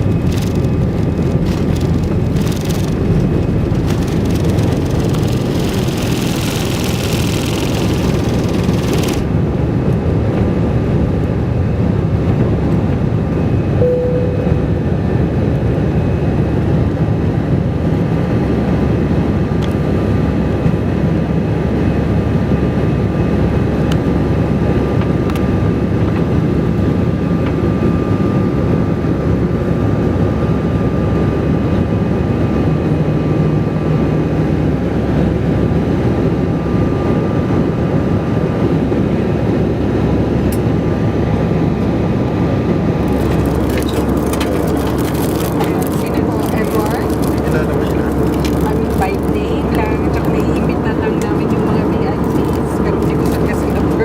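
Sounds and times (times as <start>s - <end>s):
jet engine cabin rumble: 0.0s - 54.0s
faint steady whine: 26.6s - 54.0s.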